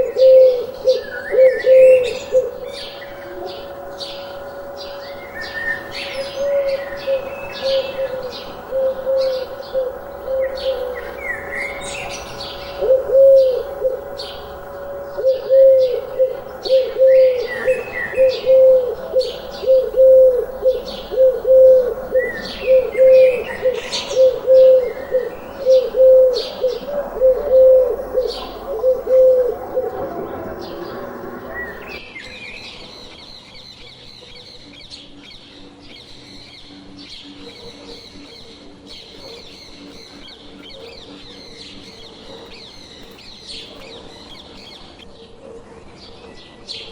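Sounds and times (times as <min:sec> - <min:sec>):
pigeon cooing: 0:00.0 - 0:32.0
small birds chirping: 0:00.0 - 0:45.4.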